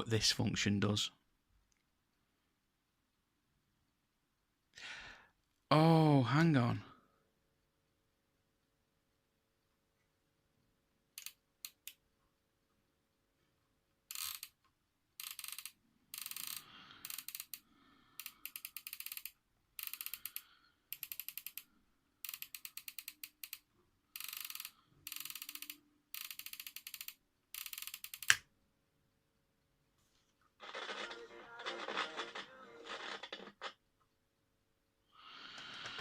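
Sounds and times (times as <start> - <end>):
flip clock gears ratcheting clicks: 11.2 - 12.0, 14.1 - 14.6, 15.2 - 17.6, 18.2 - 28.4.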